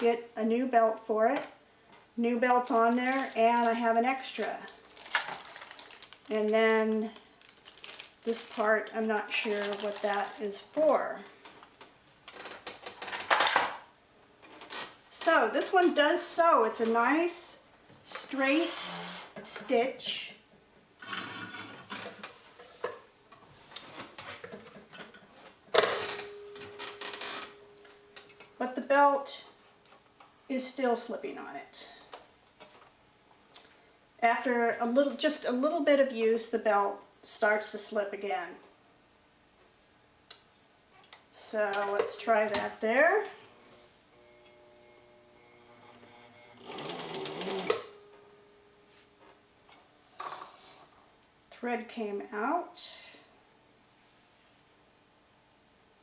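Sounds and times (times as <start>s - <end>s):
faint hum: 41.1s - 50.2s
sewing machine stitching: 45.8s - 48.0s.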